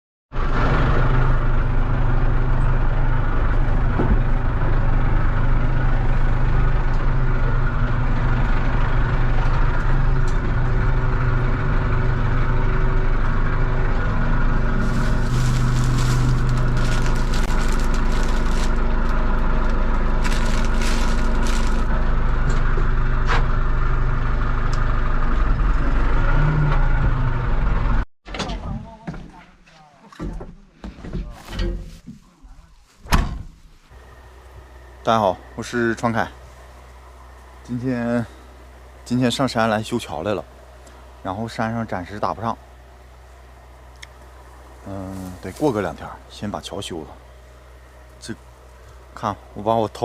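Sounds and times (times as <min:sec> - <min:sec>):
tractor engine running: 0:00.4 - 0:26.3, 0:33.9 - 0:50.0
clattering and scraping: 0:14.8 - 0:18.8.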